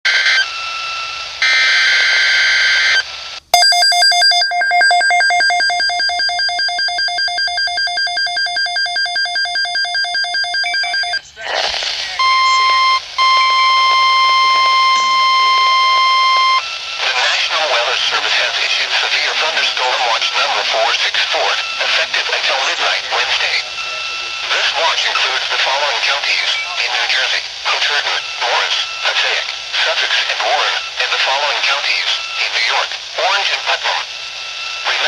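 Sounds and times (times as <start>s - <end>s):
long steady attention tone: 0.1s - 35.0s
fast pulsing electronic beep: 12.2s - 18.1s
short electronic tones: 12.2s - 20.3s.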